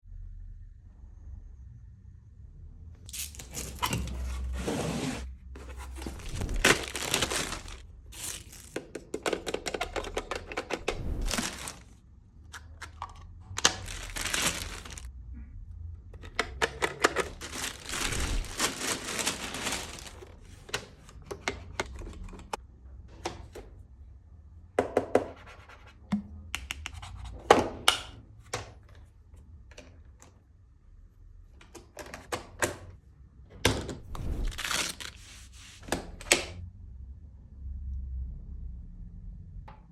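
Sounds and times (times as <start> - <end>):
packaging tearing and crinkling: 6.1 - 8.8, 10.8 - 11.9, 13.6 - 15.1, 17.2 - 20.4, 34.4 - 35.2.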